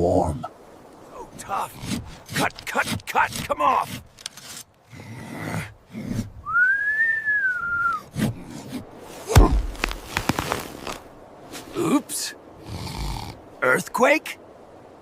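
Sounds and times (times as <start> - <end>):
rising and falling whistle: 6.5 - 8.0
heavy low thud: 9.3 - 10.1.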